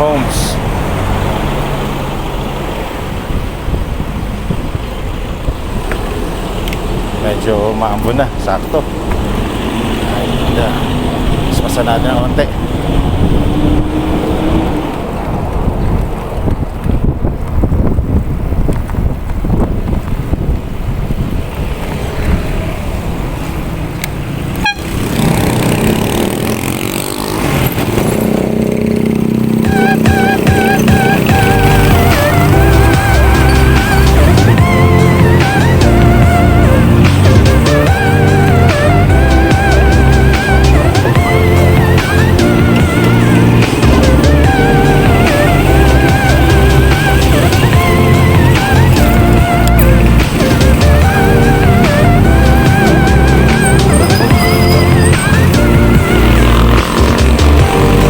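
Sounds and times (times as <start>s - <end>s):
wind rushing over microphone: 0.0s - 29.7s
engine hum: 0.0s - 58.0s
road and traffic noise: 0.0s - 58.0s.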